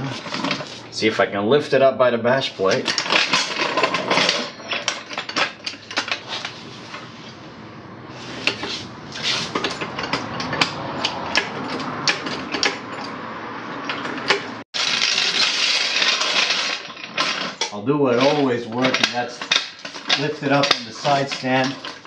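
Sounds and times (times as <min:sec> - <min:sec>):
metal clinks and knocks of tools: 0:08.4 - 0:13.2.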